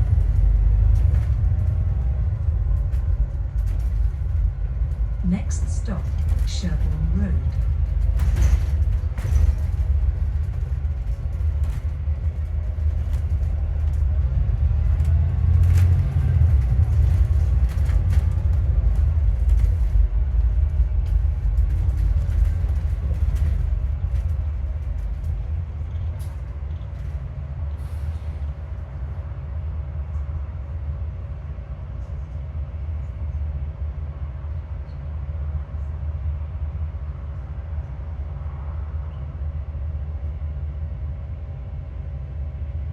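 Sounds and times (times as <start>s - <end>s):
body rattles and clicks: 0.0s - 27.7s
bus engine rumble: 0.0s - 42.9s
thin steady whine: 5.2s - 7.6s.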